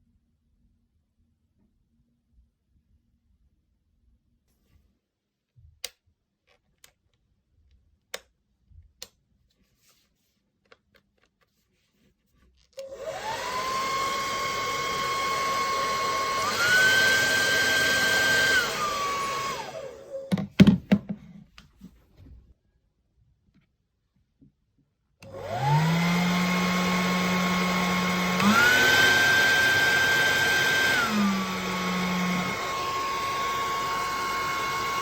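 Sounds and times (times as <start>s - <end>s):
hair dryer running: 12.8s - 20.4s, 25.2s - 35.0s.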